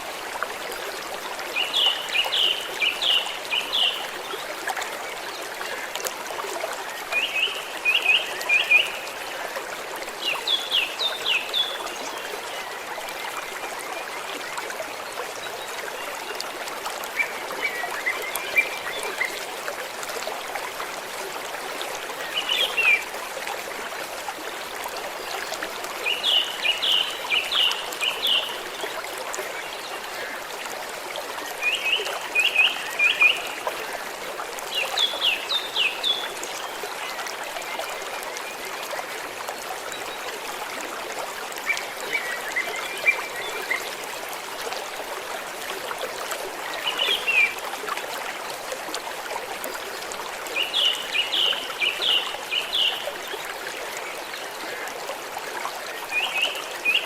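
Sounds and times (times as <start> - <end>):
stream trickling: 0.0 - 57.0.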